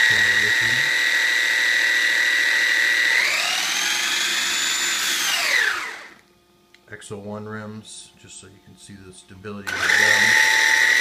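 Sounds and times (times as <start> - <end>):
rc truck motor whining: 2.0 - 6.2, 9.7 - 11.0.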